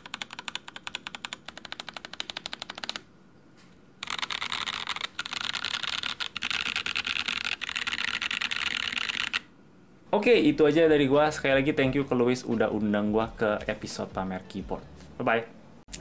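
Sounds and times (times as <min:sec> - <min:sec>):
mechanical keyboard typing: 0:00.0 - 0:03.1, 0:04.0 - 0:09.5.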